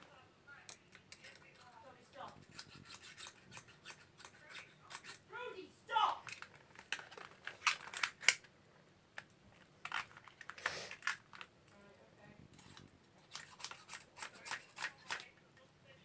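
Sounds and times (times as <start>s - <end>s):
gun clicks and scrapes: 0.7s - 5.3s, 6.2s - 8.6s, 9.2s - 11.8s, 12.5s - 15.4s.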